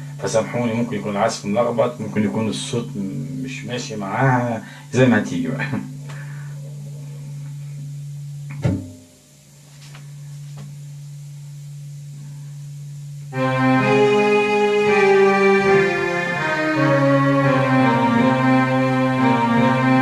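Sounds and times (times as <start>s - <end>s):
electronic organ chords: 0.0s - 8.4s, 13.3s - 20.0s.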